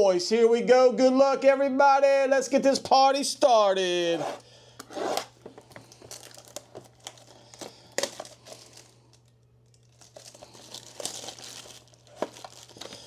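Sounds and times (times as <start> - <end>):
plastic packaging crinkling: 4.8 - 13.0.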